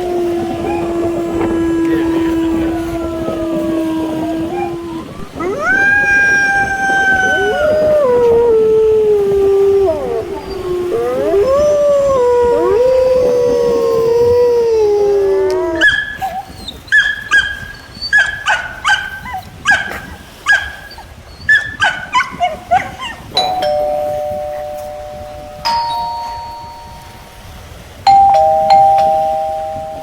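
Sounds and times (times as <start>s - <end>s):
dog yapping: 0.0s - 14.4s, 15.5s - 23.9s
doorbell chiming ding-dong: 23.4s - 30.0s.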